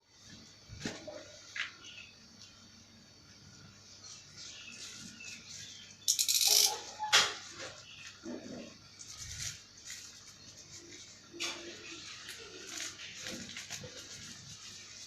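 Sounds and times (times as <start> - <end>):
loud packaging crinkle: 9.0 - 15.0.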